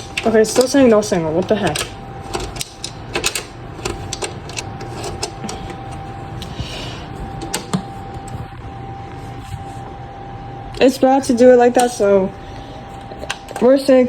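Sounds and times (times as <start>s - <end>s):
faint whine: 0.0s - 14.0s
steady hum: 0.0s - 14.0s.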